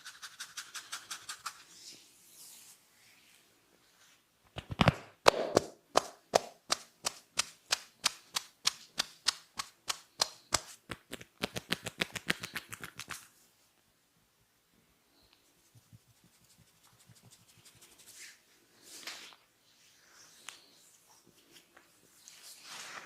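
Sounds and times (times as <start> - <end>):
hands snapping in head massage: 4.5 - 13.3.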